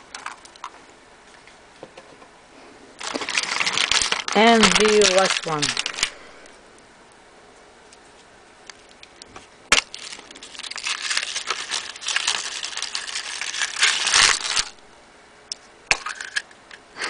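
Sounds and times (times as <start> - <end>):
foil wrapper crinkling: 0.0 - 0.7, 3.0 - 6.5, 8.7 - 14.8.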